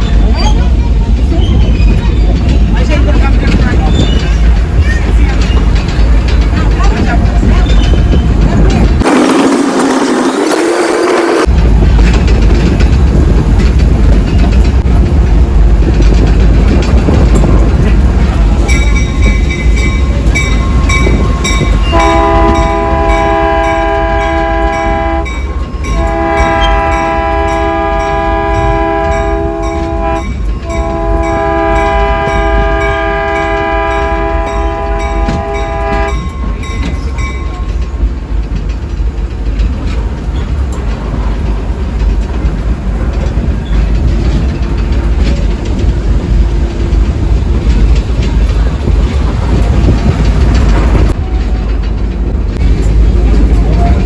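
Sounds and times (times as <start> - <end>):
train rumbling by: 0.0 - 54.0
train horn blasts: 21.9 - 25.4, 26.0 - 36.3.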